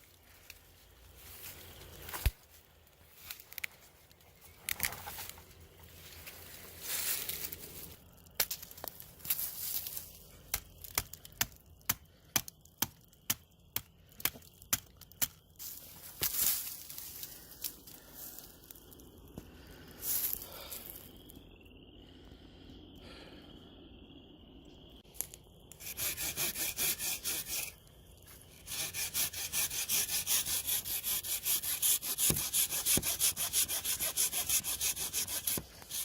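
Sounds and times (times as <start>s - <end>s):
footsteps crunching dry leaves: 5.9s - 8.0s, 15.6s - 18.5s.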